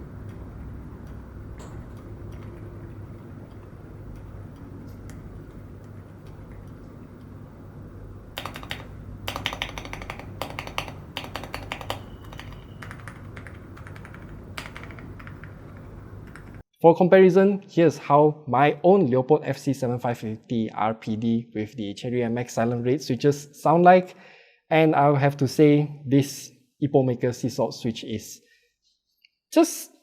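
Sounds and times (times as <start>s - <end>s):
muted keyboard typing: 0.0s - 7.4s, 8.2s - 16.6s
low background hum: 0.0s - 16.6s.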